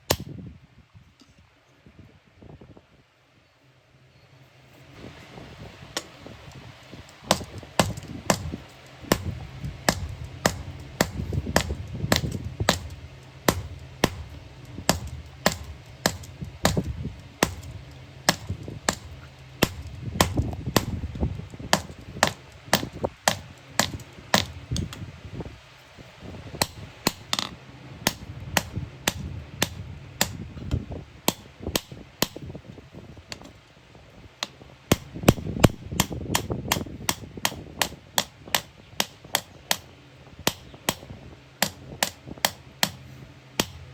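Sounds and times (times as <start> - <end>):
hammer striking iron: 6.0 - 25.0, 26.6 - 32.4, 34.9 - 39.9, 40.5 - 43.0, 43.6 - 43.8.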